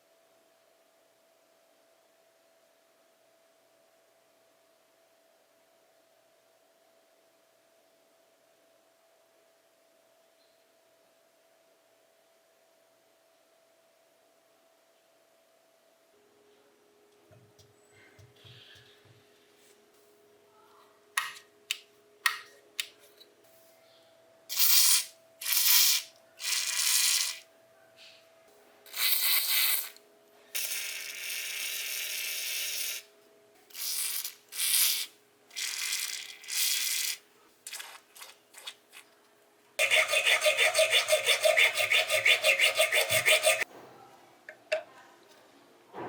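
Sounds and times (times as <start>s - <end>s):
scraping on metal: 39.8s - 43.7s.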